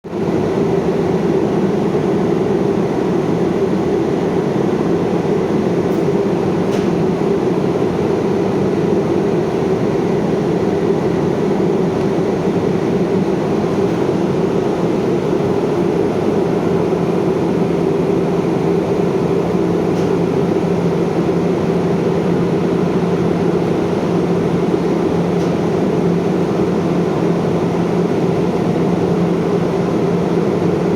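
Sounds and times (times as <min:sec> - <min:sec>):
fan rushing air: 0:00.0 - 0:30.9
fan low hum: 0:00.1 - 0:30.9.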